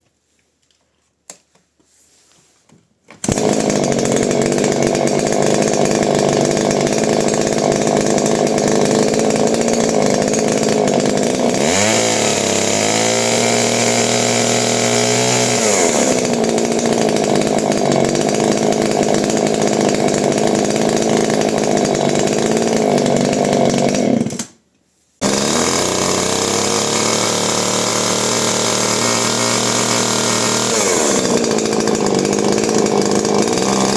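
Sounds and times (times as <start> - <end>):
chainsaw engine running: 3.2 - 24.6, 25.2 - 33.9.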